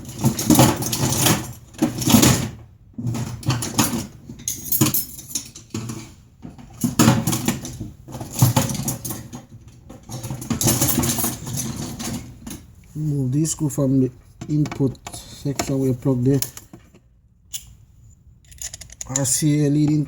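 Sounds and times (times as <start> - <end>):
screwdriver scraping and clicking: 18.4 - 20.0.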